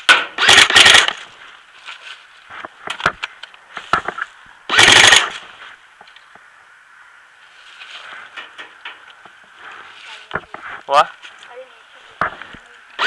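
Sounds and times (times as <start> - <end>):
airsoft gun firing bursts: 0.4 - 1.2, 4.7 - 5.4.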